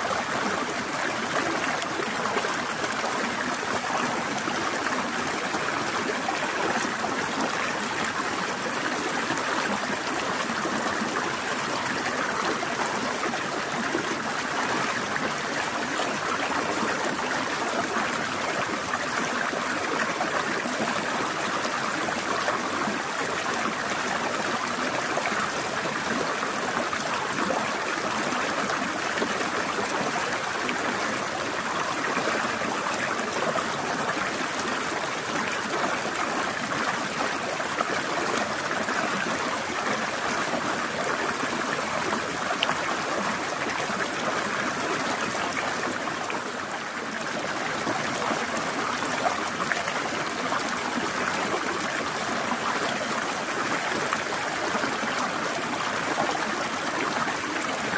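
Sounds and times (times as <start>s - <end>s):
stream trickling over rocks: 0.0s - 57.9s.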